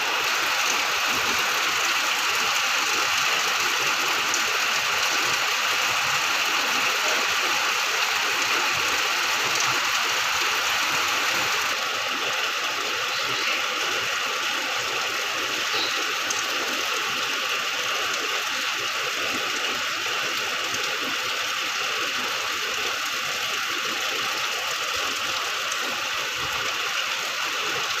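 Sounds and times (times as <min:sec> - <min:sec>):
steady rainfall: 0:00.0 - 0:28.0.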